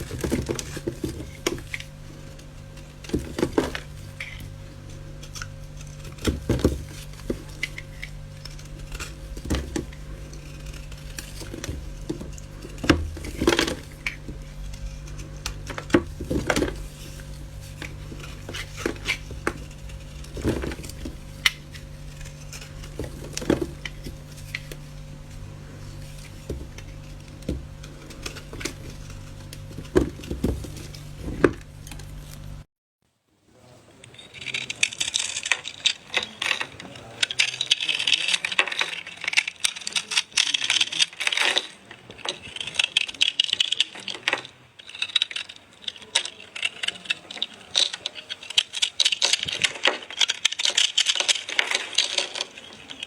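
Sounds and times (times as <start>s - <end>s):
clicks and knocks of hard objects: 0.0s - 32.6s, 34.0s - 53.0s
steady low hum: 0.0s - 32.7s.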